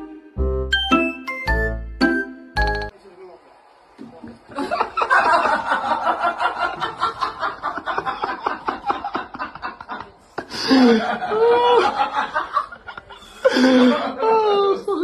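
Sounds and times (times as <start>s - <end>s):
person laughing: 7.9s - 12.2s.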